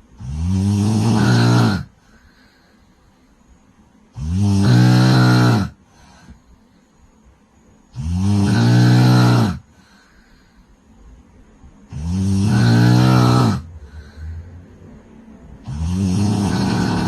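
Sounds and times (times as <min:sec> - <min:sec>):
woman snoring loudly: 0:00.2 - 0:02.5, 0:04.1 - 0:06.4, 0:07.9 - 0:10.1, 0:11.9 - 0:14.6, 0:15.6 - 0:17.0
quiet breath: 0:01.9 - 0:04.2, 0:05.8 - 0:07.9, 0:09.6 - 0:11.9, 0:13.6 - 0:15.7.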